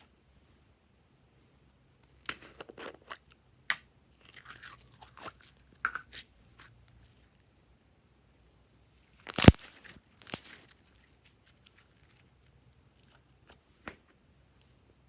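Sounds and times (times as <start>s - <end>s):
slime popping and crackling: 9.2s - 10.6s.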